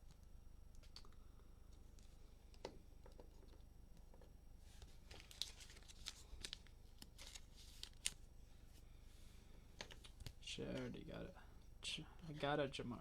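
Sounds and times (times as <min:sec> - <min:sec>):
trading cards rustling and clicking: 0:04.8 - 0:08.2.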